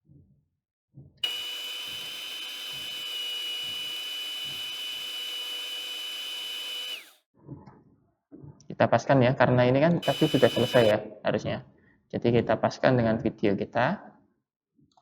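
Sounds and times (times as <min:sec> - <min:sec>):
coffee grinder motor whining: 0:01.2 - 0:07.2, 0:10.0 - 0:10.9.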